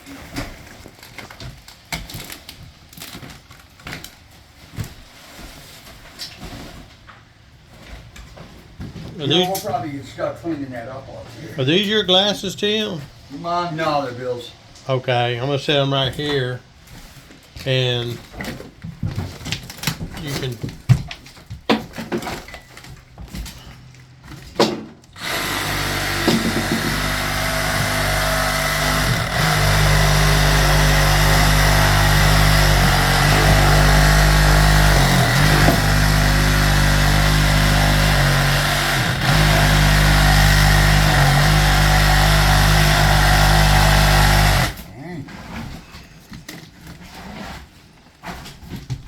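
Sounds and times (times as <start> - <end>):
motor running loudly: 25.2 - 44.8.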